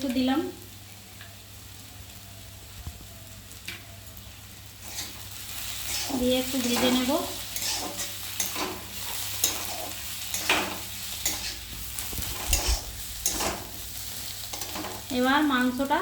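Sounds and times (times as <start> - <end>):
vegetables sizzling in oil: 0.0 - 16.0
spoon scraping against pan: 4.8 - 15.1.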